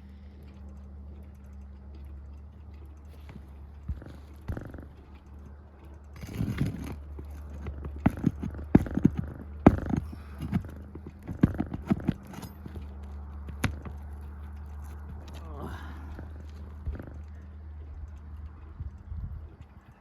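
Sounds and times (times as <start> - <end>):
steady low hum: 0.0 - 20.0
knocks and taps on shingles: 6.2 - 15.4.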